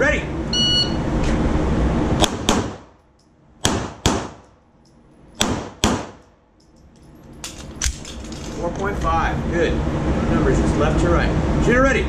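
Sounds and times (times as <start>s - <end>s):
handgun shots: 2.2s - 3.0s, 3.6s - 4.5s, 5.4s - 6.2s.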